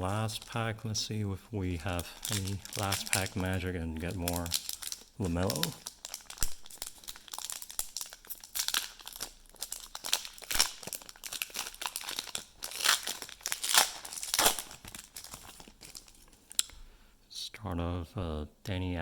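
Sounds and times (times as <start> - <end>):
plastic wrapper tearing and crinkling: 1.9 - 16.8.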